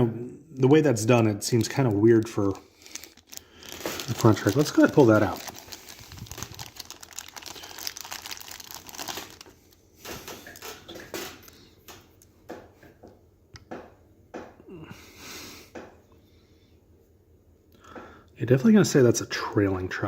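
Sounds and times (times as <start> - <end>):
plastic packaging crinkling: 1.4 - 12.2.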